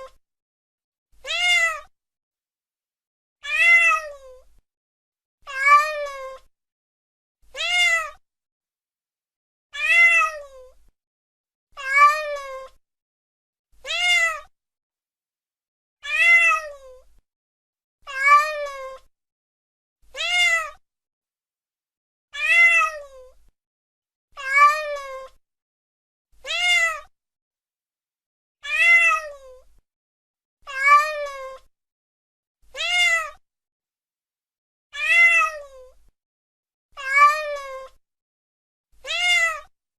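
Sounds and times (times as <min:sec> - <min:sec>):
cat meowing: 0:01.2 - 0:01.9, 0:03.4 - 0:04.4, 0:05.5 - 0:06.5, 0:07.5 - 0:08.2, 0:09.8 - 0:10.8, 0:11.8 - 0:12.8, 0:13.8 - 0:14.5, 0:16.0 - 0:17.0, 0:18.1 - 0:19.1, 0:20.1 - 0:20.8, 0:22.4 - 0:23.4, 0:24.4 - 0:25.4, 0:26.4 - 0:27.1, 0:28.6 - 0:29.7, 0:30.7 - 0:31.7, 0:32.7 - 0:33.4, 0:35.0 - 0:36.0, 0:37.0 - 0:38.0, 0:39.0 - 0:39.7.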